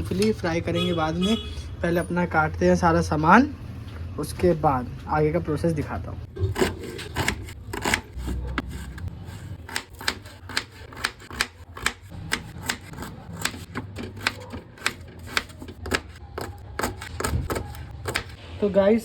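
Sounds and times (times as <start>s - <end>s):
knife chopping on cutting board: 6.4s - 18.4s.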